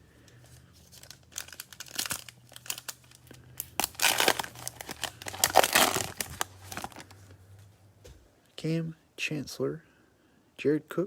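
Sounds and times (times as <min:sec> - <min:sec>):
wrapper tearing and crinkling: 0:00.8 - 0:07.2.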